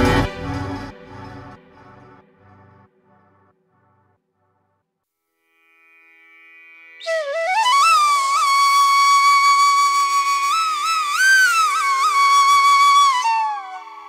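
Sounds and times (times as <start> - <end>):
flute-like melody: 0.0 - 2.9, 7.0 - 14.0.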